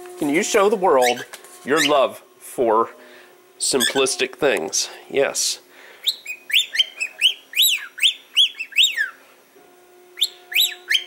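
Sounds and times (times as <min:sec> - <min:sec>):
bird chirping: 0:06.0 - 0:09.2, 0:10.2 - 0:11.0.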